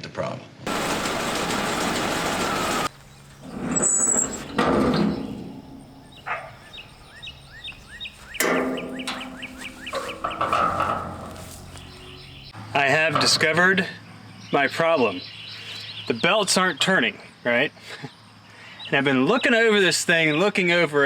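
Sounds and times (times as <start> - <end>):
birds chirping: 0.7 - 12.6.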